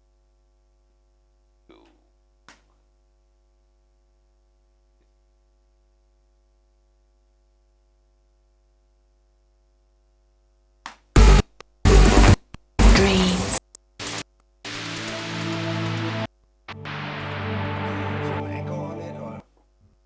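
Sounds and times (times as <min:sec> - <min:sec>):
faint mains hum: 0:00.0 - 0:10.9
electronic synth bursts: 0:11.2 - 0:19.4.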